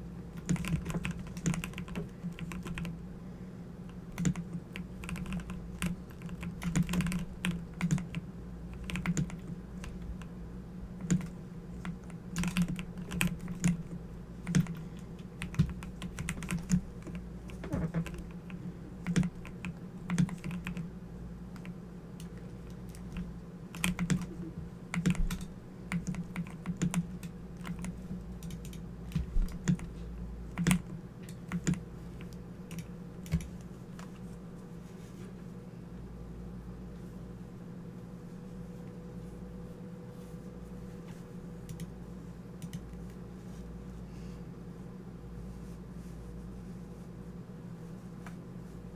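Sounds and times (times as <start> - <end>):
steady low hum: 0.0 - 48.9
computer keyboard key clicks: 3.9 - 10.3, 11.0 - 13.8, 14.4 - 20.9, 21.5 - 24.3, 25.0 - 29.9, 30.5 - 33.7, 42.6 - 43.1.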